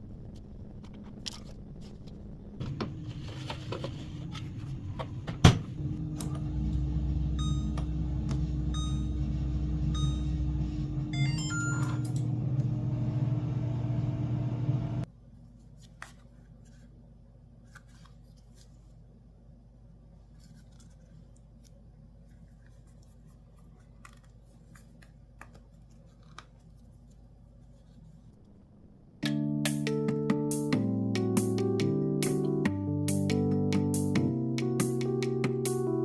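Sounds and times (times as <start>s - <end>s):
steady low hum: 0.0s - 15.1s.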